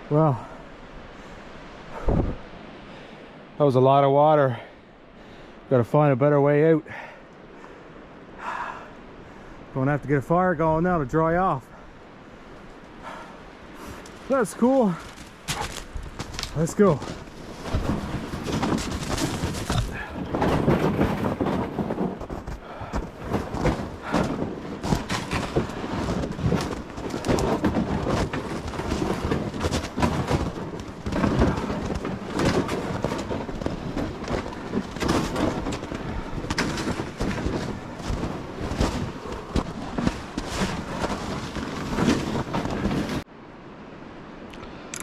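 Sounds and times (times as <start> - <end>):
footsteps crunching through snowy brush: 13.7 - 43.2.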